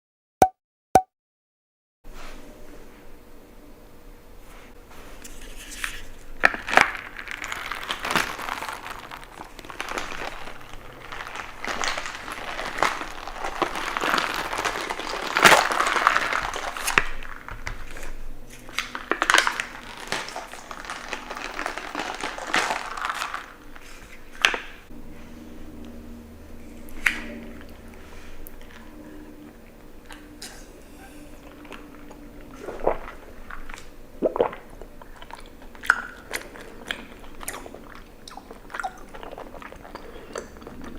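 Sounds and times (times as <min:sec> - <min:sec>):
plastic packaging crinkling: 0:05.2 - 0:24.8.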